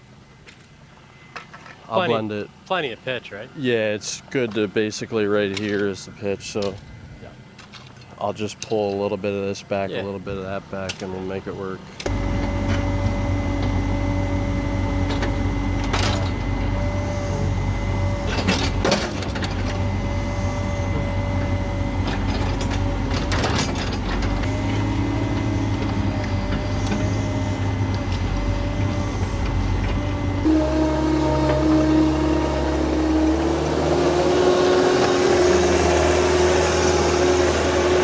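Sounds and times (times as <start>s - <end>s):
construction machine engine running: 12.0s - 38.0s.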